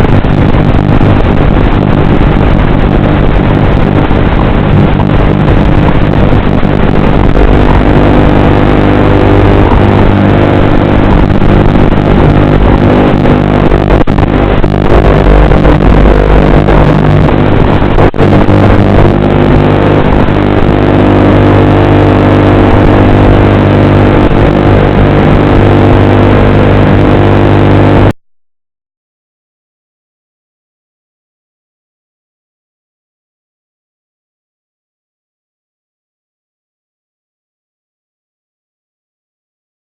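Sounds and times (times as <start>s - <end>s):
drone propellers buzzing: 0.0s - 28.1s.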